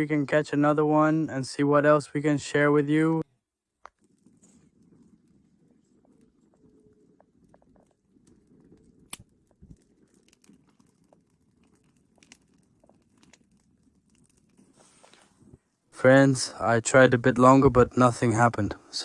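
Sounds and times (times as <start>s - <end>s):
faint clicks and rustles: 3.4s - 16.0s.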